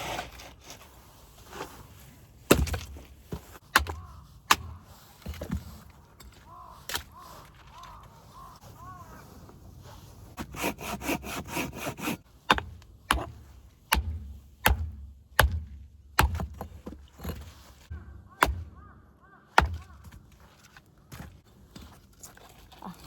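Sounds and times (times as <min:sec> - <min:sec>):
pull saw cutting branch: 0:10.4 - 0:15.6.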